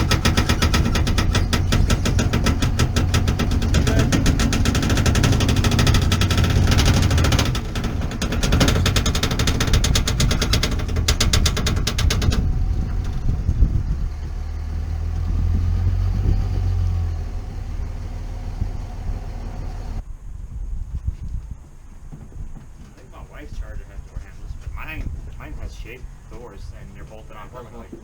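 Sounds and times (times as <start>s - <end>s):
car engine running: 0.0s - 20.0s
low hum: 0.0s - 20.1s.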